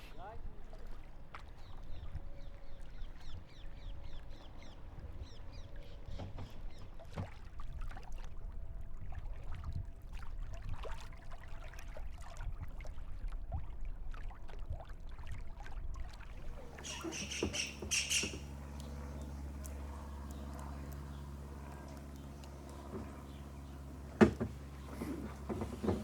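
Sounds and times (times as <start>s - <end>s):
low motor hum: 0.0s - 11.7s, 15.4s - 26.0s
water splashing around kayak: 0.0s - 26.0s
small knocks: 24.0s - 26.0s.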